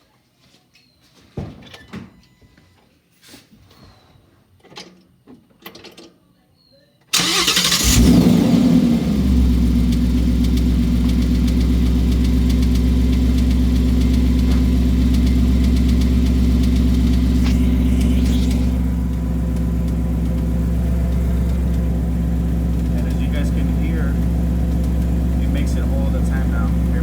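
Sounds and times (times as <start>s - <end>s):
car engine idling: 7.2s - 27.0s
faint engine ticking: 7.2s - 27.0s.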